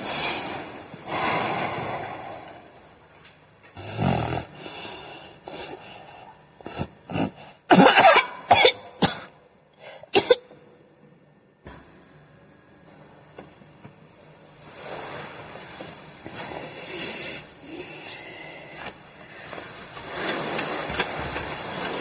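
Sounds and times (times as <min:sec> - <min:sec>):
person coughing: 0:06.7 - 0:09.4, 0:10.0 - 0:10.5.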